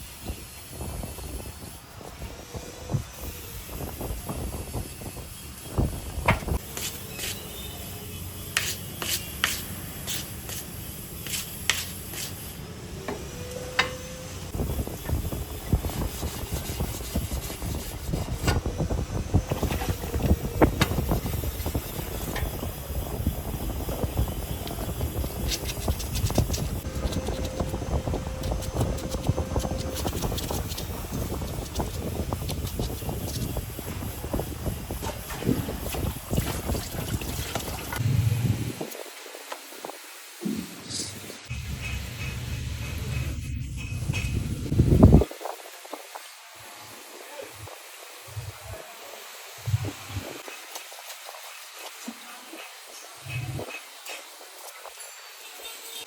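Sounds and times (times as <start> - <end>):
steady rumbling noise: 12.6 - 48.8.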